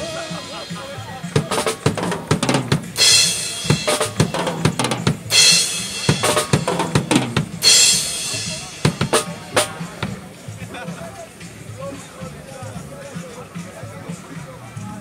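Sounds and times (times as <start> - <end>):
cymbal crashes: 2.6 - 10.2.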